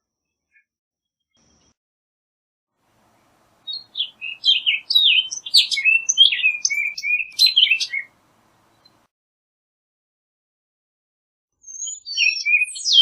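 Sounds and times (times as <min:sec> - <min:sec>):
oriole singing: 0:03.0 - 0:09.0.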